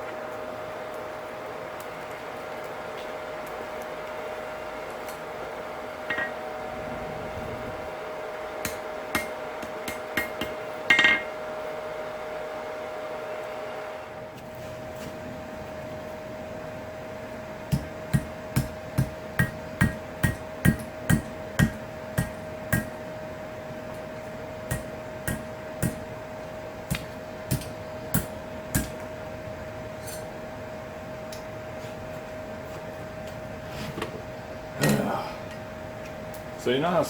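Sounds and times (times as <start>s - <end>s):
steady hum: 0.0s - 37.0s
hammer striking steel on anvil: 6.1s - 6.4s, 8.6s - 11.4s, 17.7s - 23.0s, 24.7s - 26.1s, 26.9s - 29.0s.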